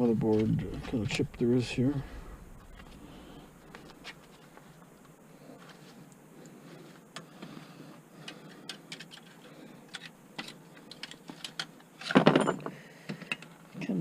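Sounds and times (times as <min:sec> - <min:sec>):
parts clattering: 0:08.3 - 0:13.6.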